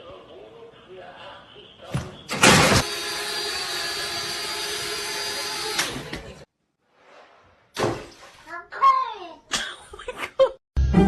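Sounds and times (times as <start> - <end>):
small electric motor whirring: 2.8 - 6.1.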